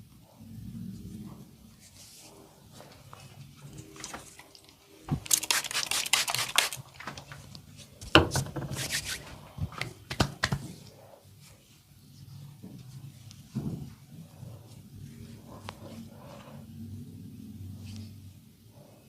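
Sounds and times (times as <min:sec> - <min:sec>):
hands rubbing hair and skin: 0:04.0 - 0:07.9, 0:08.8 - 0:10.7.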